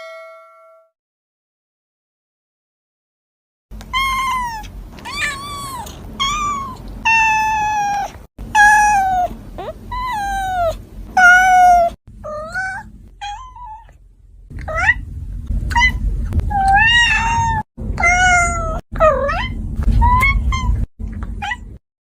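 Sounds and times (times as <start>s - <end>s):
cat meowing: 3.9s - 14.0s, 15.7s - 21.7s.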